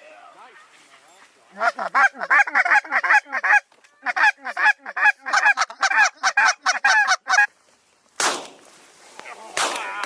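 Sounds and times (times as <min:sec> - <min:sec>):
goose honking: 0:01.5 - 0:07.5.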